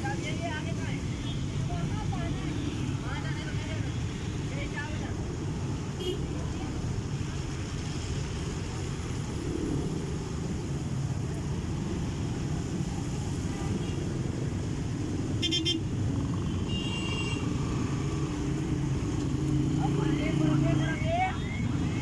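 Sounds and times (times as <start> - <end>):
road traffic rumble: 0.0 - 22.0
vehicle horn honking: 15.4 - 15.8, 16.7 - 17.5.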